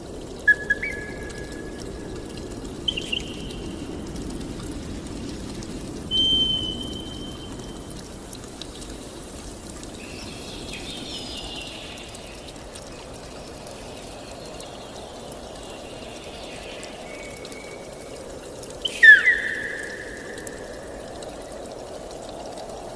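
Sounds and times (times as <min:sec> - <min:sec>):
rush of flowing water: 0:00.0 - 0:22.9
faint high bird calls: 0:00.5 - 0:01.6, 0:06.1 - 0:07.4, 0:18.8 - 0:20.4.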